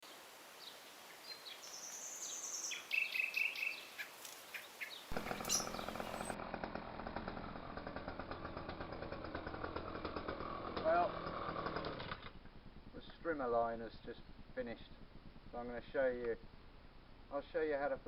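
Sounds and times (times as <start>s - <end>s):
birds chirping and whistling: 1.3s - 6.4s
strimmer engine running: 5.1s - 18.0s.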